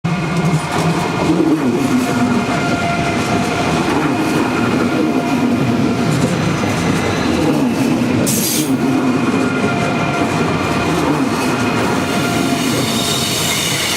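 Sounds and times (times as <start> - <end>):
train running noise: 0.1 - 13.9
train wheels squealing: 11.8 - 13.9.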